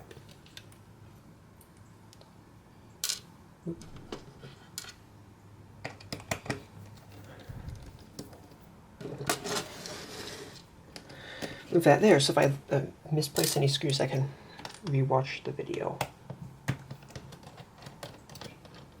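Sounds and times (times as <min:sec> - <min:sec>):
parts clattering: 0:05.8 - 0:12.6, 0:13.3 - 0:14.9.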